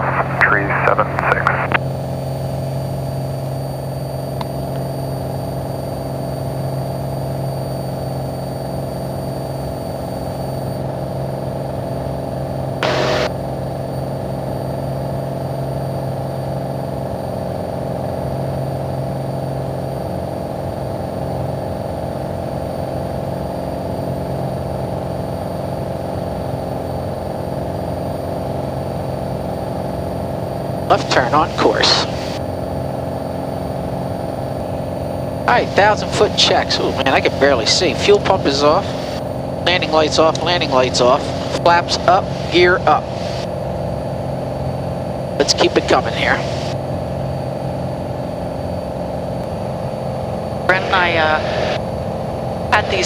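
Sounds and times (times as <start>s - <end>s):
aircraft piston engine at full power: 0.0s - 3.6s, 10.8s - 53.0s
burst of noise: 12.8s - 13.3s.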